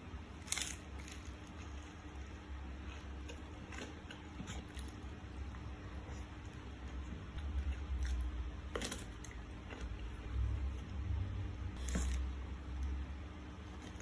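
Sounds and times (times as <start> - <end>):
steady low hum: 0.0 - 14.0
chewing crunchy fried food: 0.4 - 10.8.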